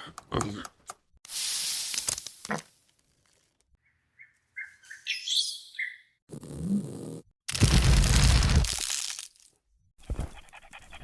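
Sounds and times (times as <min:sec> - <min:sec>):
short high bird-like chirps: 0:04.2 - 0:06.2.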